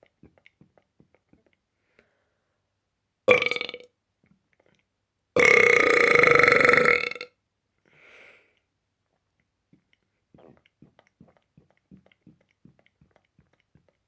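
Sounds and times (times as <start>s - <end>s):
loud rasping burps: 3.3s - 3.9s, 5.4s - 7.4s, 10.4s - 11.4s.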